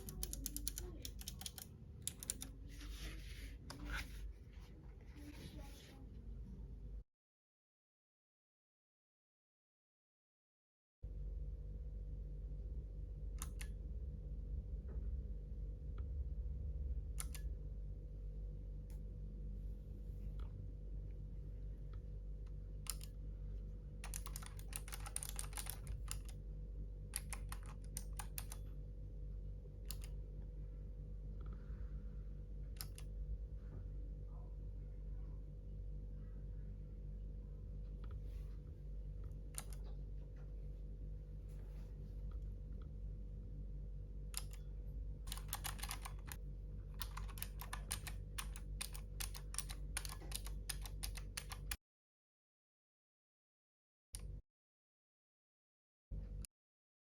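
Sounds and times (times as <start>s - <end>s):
mechanical keyboard typing: 0.0s - 3.0s, 22.9s - 23.2s, 24.0s - 26.4s, 27.1s - 28.7s, 32.7s - 33.1s, 39.5s - 39.9s, 44.4s - 44.6s, 45.3s - 51.8s
steady low hum: 0.0s - 7.0s, 11.0s - 51.8s.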